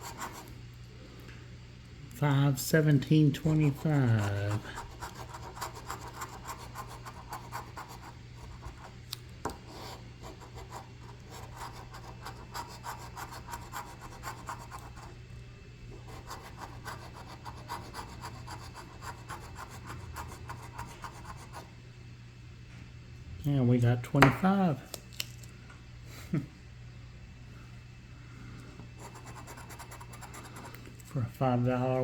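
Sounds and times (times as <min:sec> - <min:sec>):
scratching lottery ticket coating: 0:03.3 - 0:08.9, 0:10.4 - 0:15.1, 0:16.1 - 0:21.6, 0:29.1 - 0:30.8.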